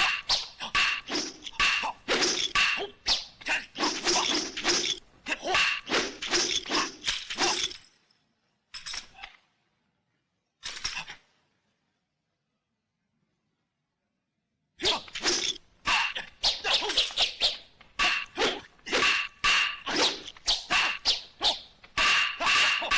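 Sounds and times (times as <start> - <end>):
weapons clacking together: 8.7 - 9.5, 10.6 - 11.3.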